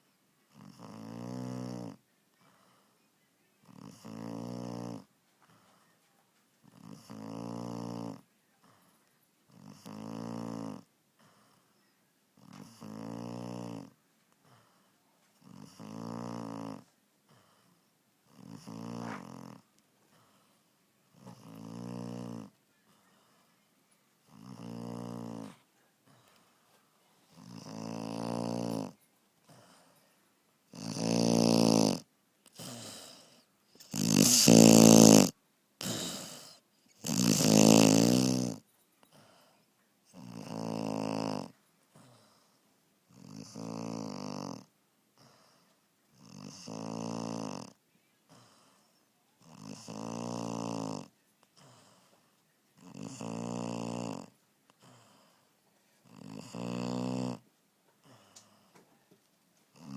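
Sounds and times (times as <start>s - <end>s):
puppy snoring: 0.5s - 2.6s, 3.6s - 5.2s, 6.6s - 8.8s, 9.5s - 11.5s, 12.4s - 14.7s, 15.4s - 20.5s, 21.1s - 22.6s, 24.2s - 26.5s, 27.2s - 30.0s, 30.7s - 39.5s, 40.1s - 42.5s, 43.1s - 48.8s, 49.4s - 52.1s, 52.8s - 58.7s.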